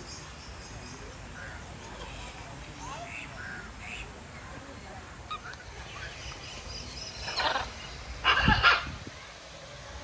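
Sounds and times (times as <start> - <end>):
harsh bird squawks: 7.2 - 9.0.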